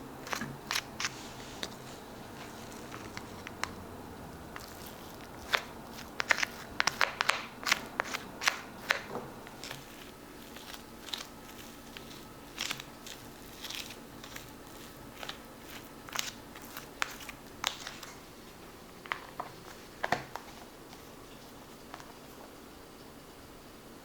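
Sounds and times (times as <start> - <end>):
plastic containers clicking: 4.5 - 9.9.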